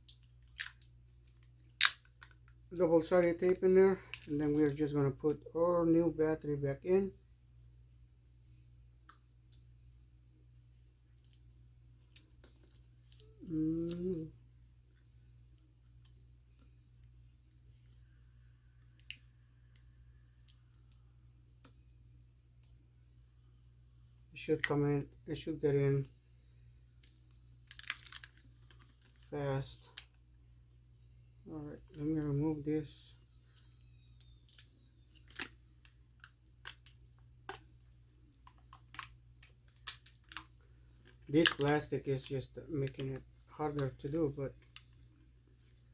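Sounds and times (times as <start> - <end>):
steady low hum: 0.0 - 45.9
plastic film crinkling: 27.0 - 30.2, 33.6 - 45.8.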